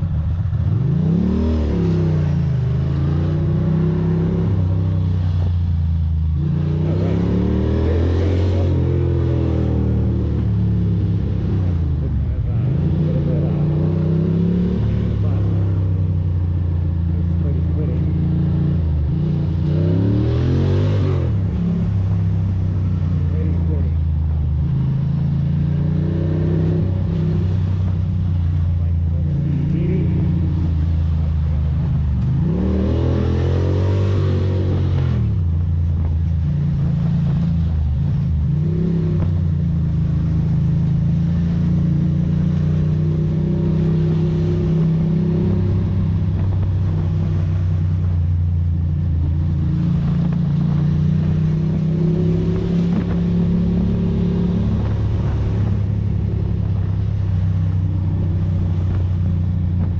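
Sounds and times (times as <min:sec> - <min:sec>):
motorcycle engine running: 0:34.3 - 0:59.9.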